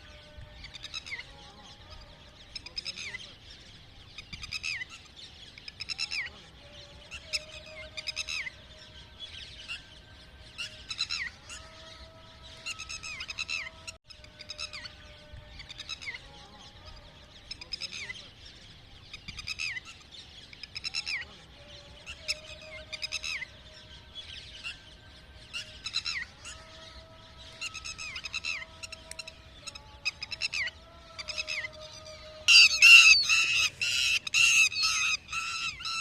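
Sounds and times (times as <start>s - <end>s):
lapwing calling: 27.6s - 36.0s.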